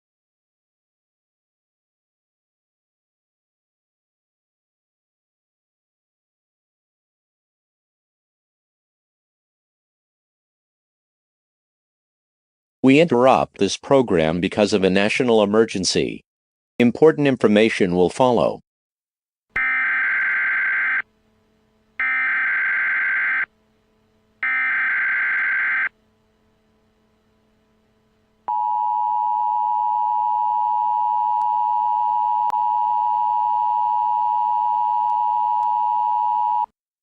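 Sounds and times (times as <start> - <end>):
digital data header bursts: 22.0 - 23.5, 24.4 - 25.9
two-tone attention signal: 24.4 - 25.9, 28.5 - 36.7.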